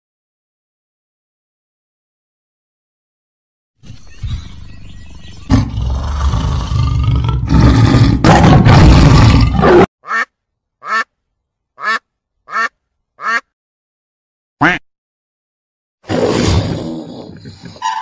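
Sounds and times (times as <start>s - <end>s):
rough rumbling animal sound: 4.1s - 9.9s
duck quacking: 10.0s - 11.1s, 11.8s - 13.5s, 14.6s - 14.8s.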